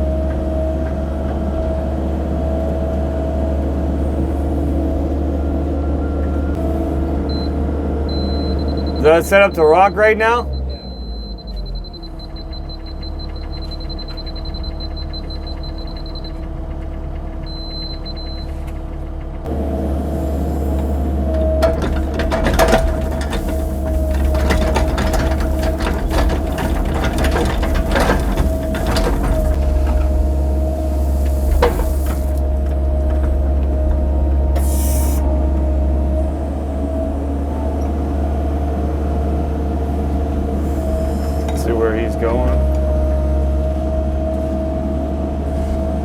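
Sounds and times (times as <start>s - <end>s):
excavator engine humming: 0.0s - 46.0s
bucket clanking on rock: 21.6s - 34.0s.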